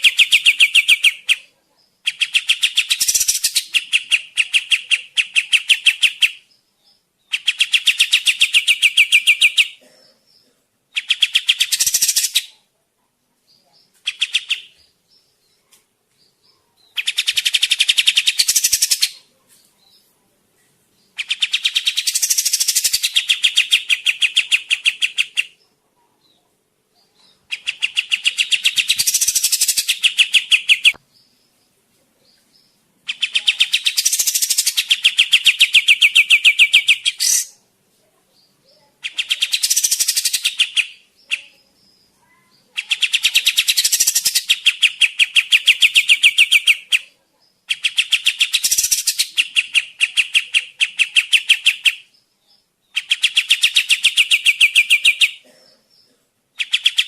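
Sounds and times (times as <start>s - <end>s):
bird singing chattering notes: 0.0s - 1.4s, 2.0s - 6.6s, 7.3s - 12.5s, 16.9s - 19.2s, 21.0s - 25.6s, 27.1s - 31.7s, 32.6s - 37.6s, 38.8s - 47.0s, 47.6s - 57.0s.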